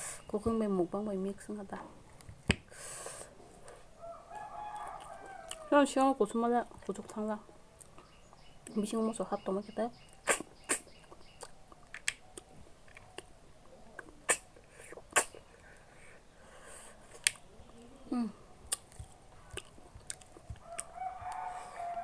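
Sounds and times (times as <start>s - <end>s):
crunchy bites and chewing: 4.6s - 5.7s, 18.6s - 22.0s.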